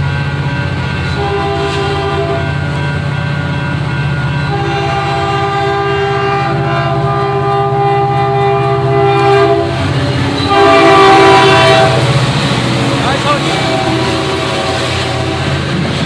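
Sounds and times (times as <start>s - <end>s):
locomotive horn blast: 0.5s - 15.9s
diesel engine drone: 6.4s - 16.0s.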